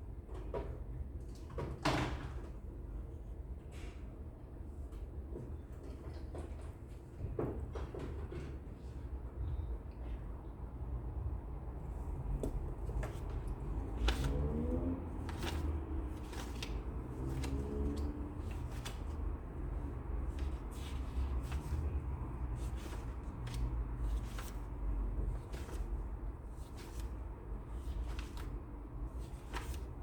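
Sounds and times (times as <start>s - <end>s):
low steady hum: 9.9s - 30.0s
paper and stationery rustling: 12.2s - 30.0s.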